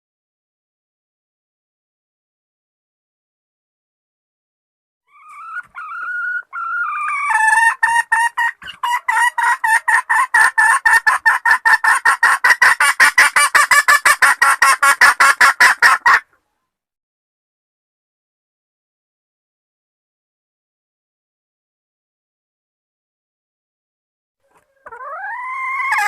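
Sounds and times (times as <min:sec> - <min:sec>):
hen calling and clucking: 0:05.1 - 0:16.5, 0:24.4 - 0:26.0.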